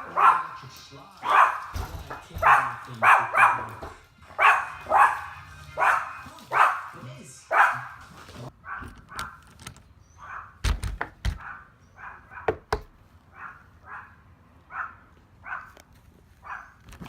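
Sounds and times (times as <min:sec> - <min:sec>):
small dogs barking: 0:00.0 - 0:09.5, 0:10.1 - 0:10.6, 0:11.3 - 0:15.8, 0:16.4 - 0:16.8
sharp knocks and thuds: 0:01.7 - 0:02.7, 0:10.6 - 0:11.5, 0:12.5 - 0:13.0.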